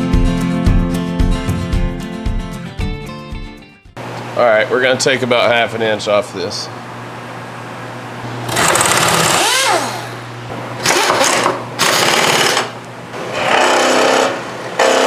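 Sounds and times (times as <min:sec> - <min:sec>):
machine motor hum: 0:06.7 - 0:15.0
metal grinding bursts: 0:08.5 - 0:15.0.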